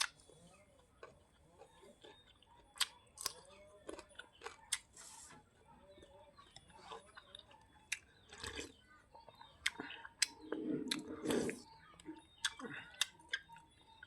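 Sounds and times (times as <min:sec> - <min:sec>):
soft chewing: 0:00.0 - 0:14.0
wet mouth clicks: 0:09.6 - 0:11.6.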